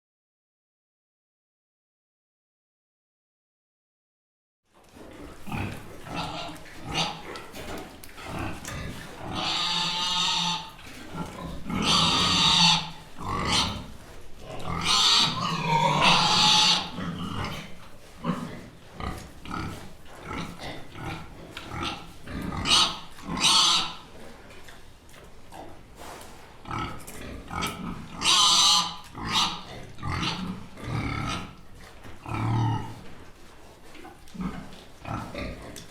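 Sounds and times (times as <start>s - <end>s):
pig grunting: 5.0s - 24.4s, 26.6s - 33.2s, 33.8s - 35.9s
pig calling loudly: 8.2s - 10.8s, 11.4s - 13.9s, 14.6s - 17.6s, 21.7s - 24.0s, 27.5s - 31.6s.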